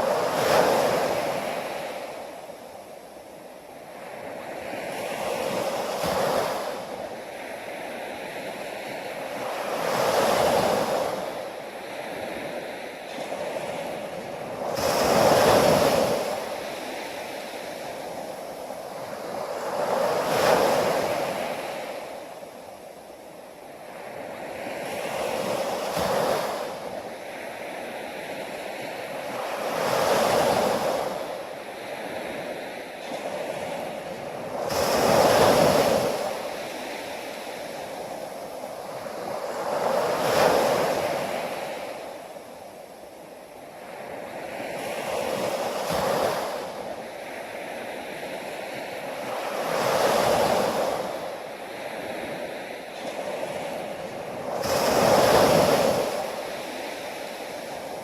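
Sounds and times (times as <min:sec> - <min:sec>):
ocean waves rolling in: 0:00.0 - 0:58.0.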